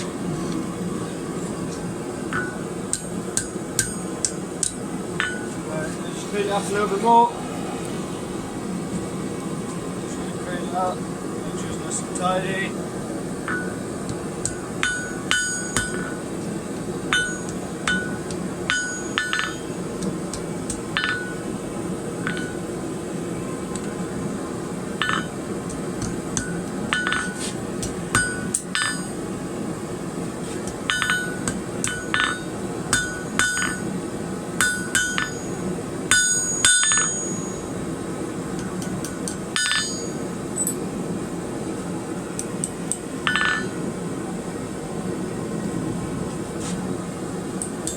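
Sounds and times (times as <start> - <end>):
steady low hum: 0.0 - 47.9
hammer tapping on anvil: 2.3 - 5.5, 13.5 - 16.2, 17.1 - 21.4, 26.0 - 29.2, 30.7 - 33.9, 34.6 - 35.5, 36.1 - 37.6, 38.6 - 40.8, 42.9 - 43.8.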